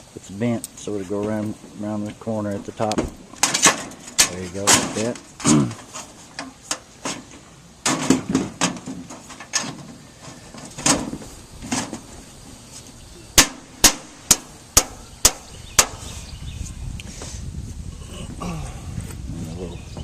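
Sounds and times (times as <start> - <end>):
hammer on metal flashing: 13.4 - 16.0.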